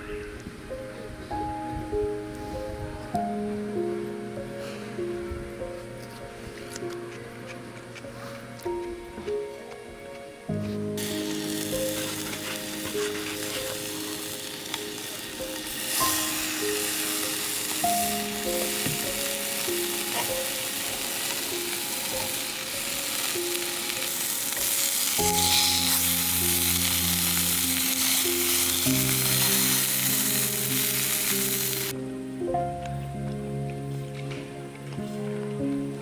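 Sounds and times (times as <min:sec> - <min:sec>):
gentle background music: 0:00.0 - 0:36.0
food sizzling in a pan: 0:11.0 - 0:31.9.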